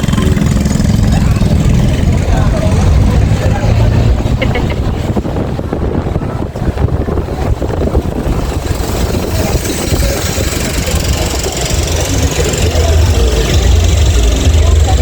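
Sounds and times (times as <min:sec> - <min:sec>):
engine knocking rumble: 0:00.0 - 0:15.0.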